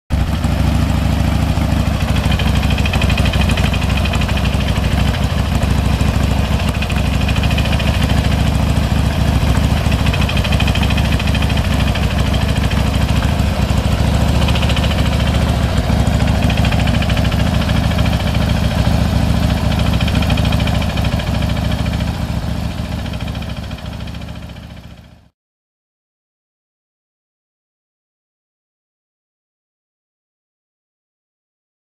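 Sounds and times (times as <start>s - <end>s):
engine clattering rattle: 0.1s - 25.0s
motorcycle engine idling: 0.1s - 25.3s.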